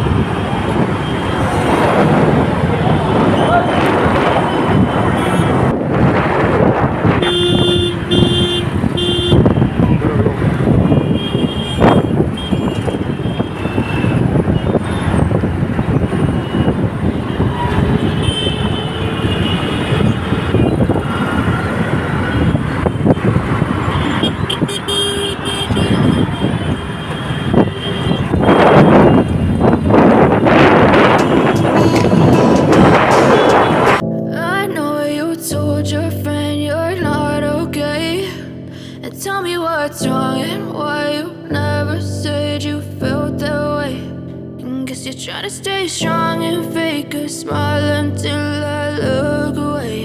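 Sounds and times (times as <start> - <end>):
busy street traffic: 0.0 - 50.0
vehicle horn honking: 3.2 - 5.7, 7.2 - 9.8, 10.7 - 15.2, 16.4 - 21.6, 22.2 - 34.0.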